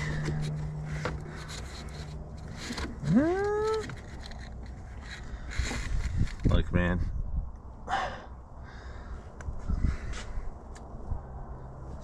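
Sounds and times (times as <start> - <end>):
man groaning: 3.0 - 3.8.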